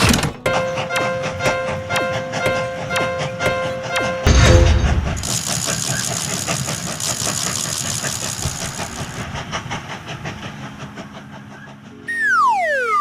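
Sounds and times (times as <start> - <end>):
train wheels clattering: 0.0 - 12.1
cartoon descending whistle: 12.1 - 13.0.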